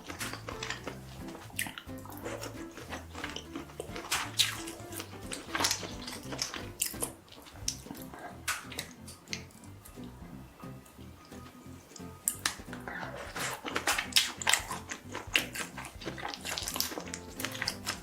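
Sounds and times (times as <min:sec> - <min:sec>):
wet slurping and chewing: 0:00.0 - 0:10.2, 0:11.9 - 0:18.0
background music with bass line: 0:00.0 - 0:18.0.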